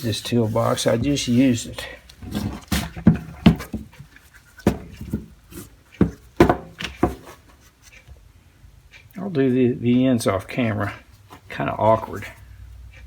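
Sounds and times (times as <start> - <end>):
rag rubbing on metal: 0.0 - 6.2.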